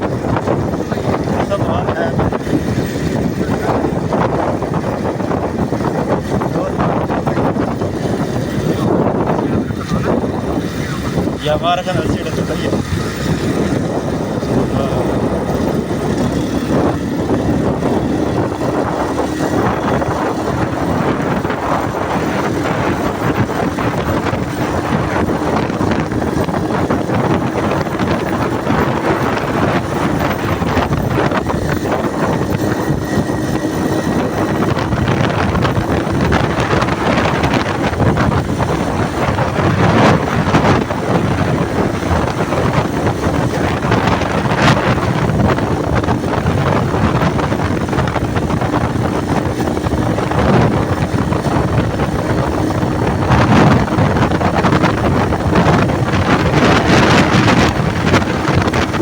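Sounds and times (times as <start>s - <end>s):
vehicle engine drone: 0.0s - 59.0s
wind noise on microphone: 0.0s - 59.0s.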